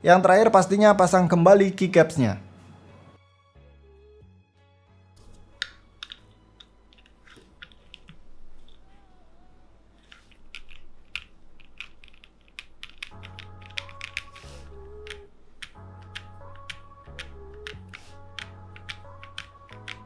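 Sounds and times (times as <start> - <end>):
background music: 0.0 - 20.0
keycaps clicking onto keyboard: 10.1 - 20.0.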